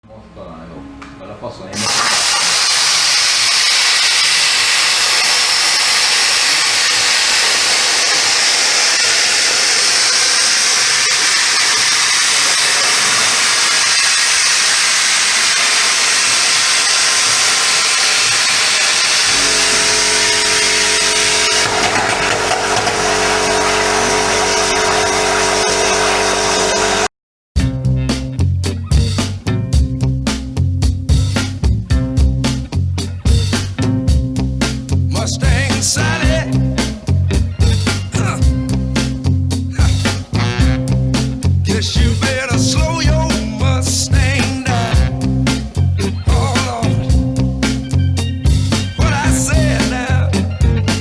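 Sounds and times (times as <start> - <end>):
plasma cutter hissing: 1.8 - 27.1
steady hum: 3.2 - 27.1.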